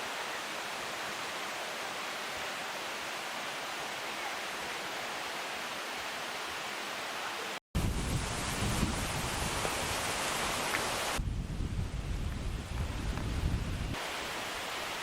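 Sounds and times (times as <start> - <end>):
river rushing over rocks: 8.2 - 11.2, 14.0 - 15.0.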